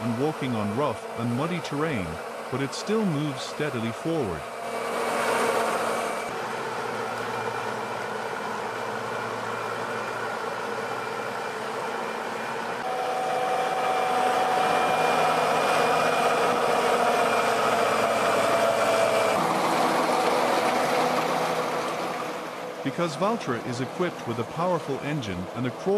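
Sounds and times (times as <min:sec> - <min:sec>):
high whine: 0:00.0 - 0:06.4, 0:12.6 - 0:25.9
tractor diesel engine running: 0:00.0 - 0:25.9.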